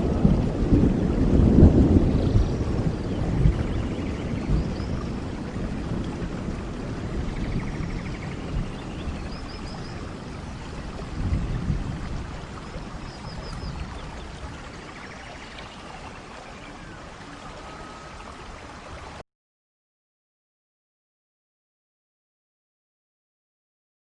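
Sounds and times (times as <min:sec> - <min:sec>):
heavy rain on foliage: 0:00.0 - 0:19.2
faint high chirps: 0:17.6 - 0:18.2.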